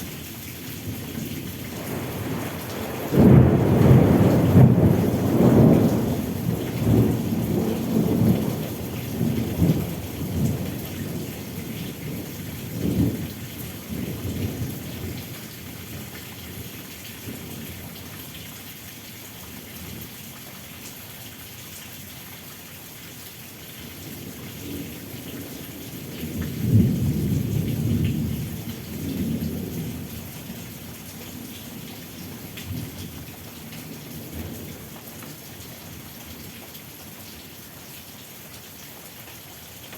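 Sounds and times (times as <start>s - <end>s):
steady rain: 0.0s - 39.9s
thunder rumbling: 1.7s - 13.3s.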